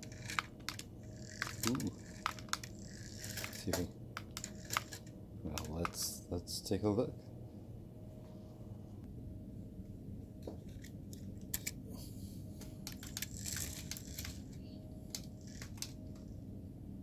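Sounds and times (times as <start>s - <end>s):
small electric motor running: 0.0s - 5.1s, 12.8s - 16.2s.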